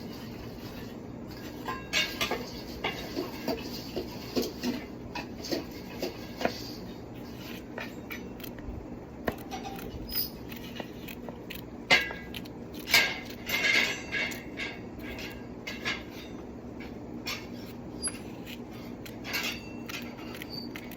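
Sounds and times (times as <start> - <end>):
dishes and pots clinking: 0.0 - 8.4, 12.9 - 18.3, 19.2 - 20.4.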